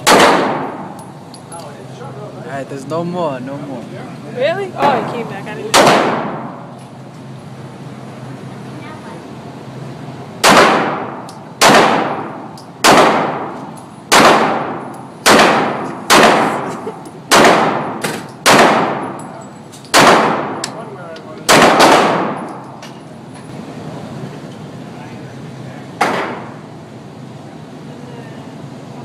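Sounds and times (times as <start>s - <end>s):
pistol shots echoing: 0.0s - 1.0s, 5.7s - 6.6s, 10.4s - 16.7s, 17.3s - 19.2s, 19.9s - 20.7s, 21.5s - 22.6s.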